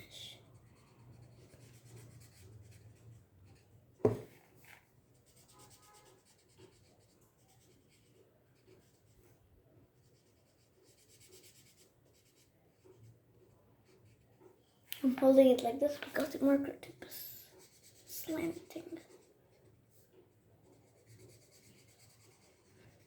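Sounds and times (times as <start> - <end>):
marker scratching on paper: 0.0 - 9.4, 10.0 - 14.5, 17.1 - 23.0
sharp knock: 4.0 - 4.3.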